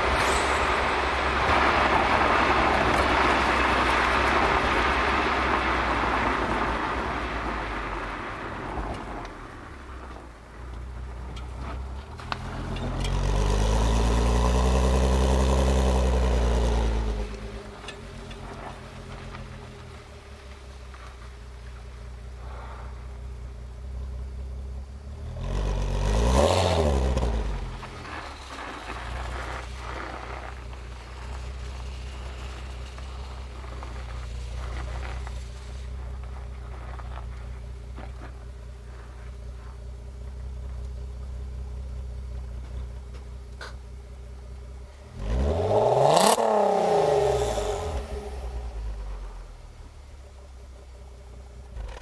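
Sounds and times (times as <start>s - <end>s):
car exhaust revving: 12.2s - 52.0s.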